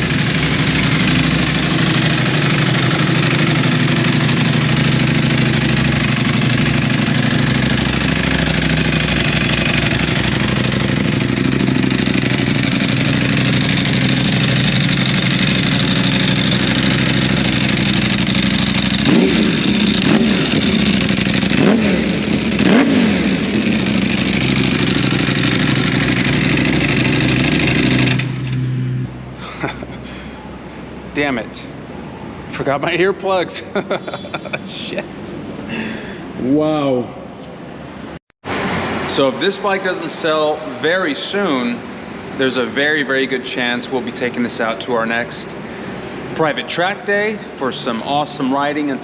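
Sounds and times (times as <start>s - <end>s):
motorcycle engine revving: 0.0s - 29.4s
motorcycle engine idling: 0.0s - 31.0s.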